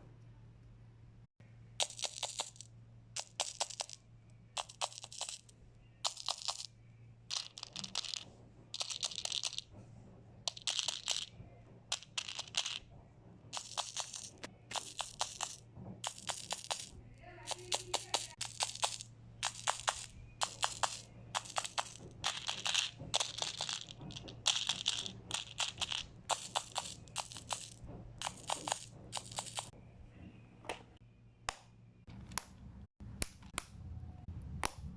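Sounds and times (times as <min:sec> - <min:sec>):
bead box crackling and clicking: 0:01.8 - 0:04.0, 0:04.6 - 0:06.7, 0:07.3 - 0:09.7, 0:10.5 - 0:11.3, 0:11.9 - 0:12.8, 0:13.6 - 0:16.9, 0:17.5 - 0:29.7.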